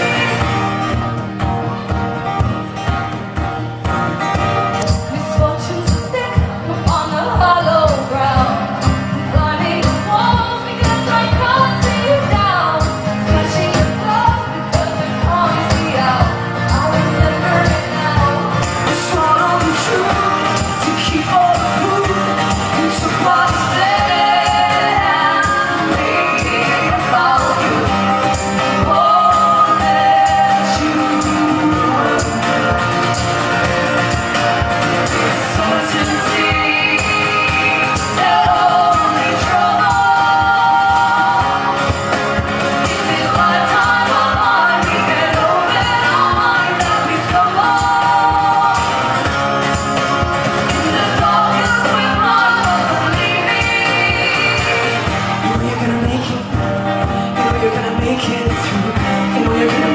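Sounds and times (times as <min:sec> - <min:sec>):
person singing: 0:00.0 - 0:01.0, 0:04.9 - 0:32.8, 0:34.9 - 0:42.1, 0:50.8 - 0:59.9
strummed accompaniment: 0:00.0 - 0:59.9.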